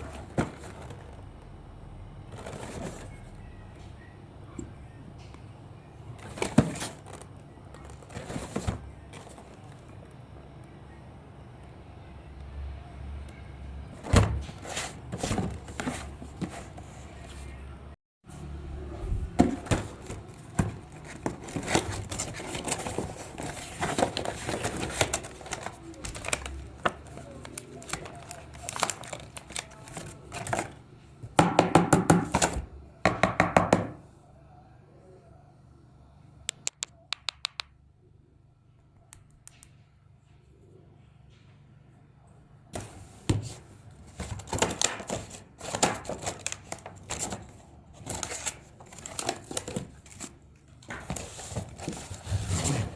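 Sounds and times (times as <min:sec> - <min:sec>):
clicks and taps: 0:36.5 - 0:37.7.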